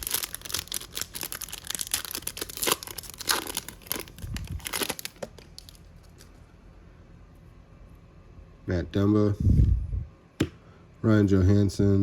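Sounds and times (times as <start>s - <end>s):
wrapper tearing and crinkling: 0.0s - 6.3s.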